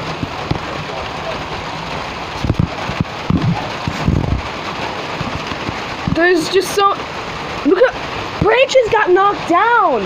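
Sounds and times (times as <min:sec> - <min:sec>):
heavy rain pouring: 0:00.0 - 0:10.0
short low thumps: 0:02.3 - 0:06.2.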